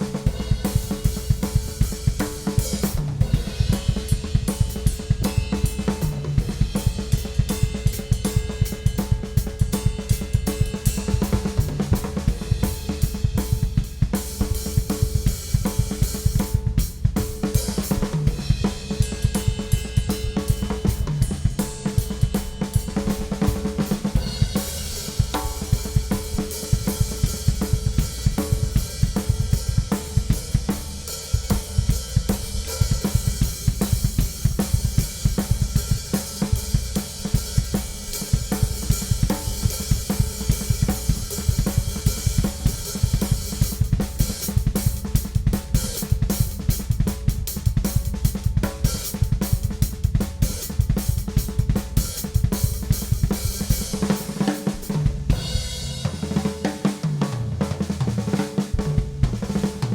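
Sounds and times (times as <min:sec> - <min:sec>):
drum kit groove: 0:00.0 - 0:59.9.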